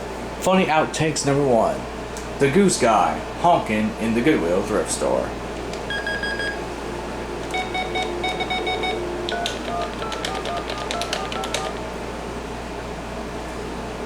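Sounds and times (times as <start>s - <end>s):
telephone keypad beeps: 5.9s - 6.6s, 7.5s - 11.8s.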